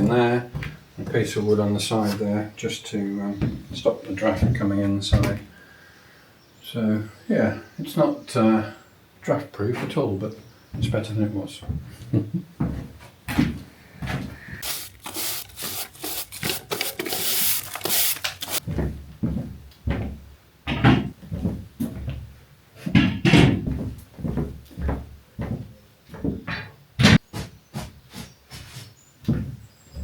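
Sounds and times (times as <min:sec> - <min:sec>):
wood scraping and rubbing: 0:14.6 - 0:18.6.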